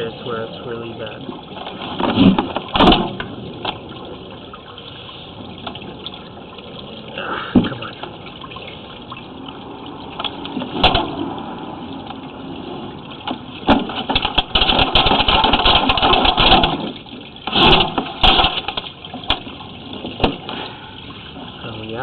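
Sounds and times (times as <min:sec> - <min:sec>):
cable rattling and scraping in pipe: 0:13.2 - 0:21.7.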